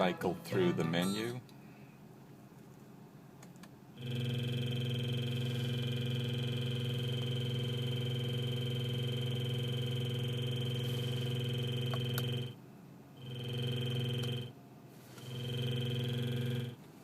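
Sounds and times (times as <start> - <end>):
electronic buzz from car speakers: 3.9 - 17.0.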